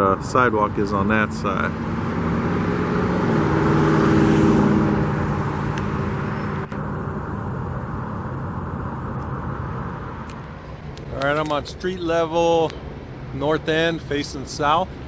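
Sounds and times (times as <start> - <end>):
vehicle passing by: 0.0 - 10.2.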